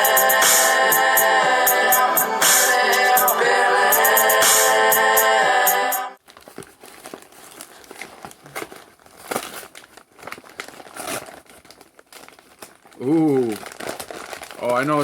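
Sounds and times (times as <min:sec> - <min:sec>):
packaging crinkling and rustling: 0:06.2 - 0:15.0
packaging tearing: 0:06.2 - 0:15.0.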